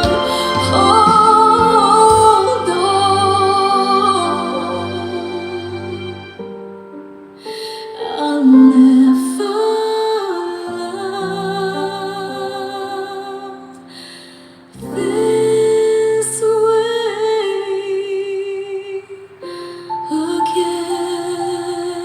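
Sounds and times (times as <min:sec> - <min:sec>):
woman singing pop ballad: 0:00.0 - 0:05.2, 0:07.7 - 0:13.8, 0:14.8 - 0:22.0.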